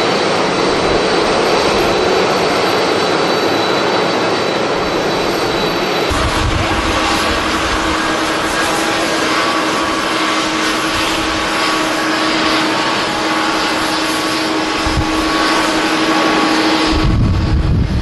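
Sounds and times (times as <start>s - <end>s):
jet engines rushing with whine: 0.0s - 18.0s
low rumble: 6.1s - 10.2s, 16.9s - 18.0s.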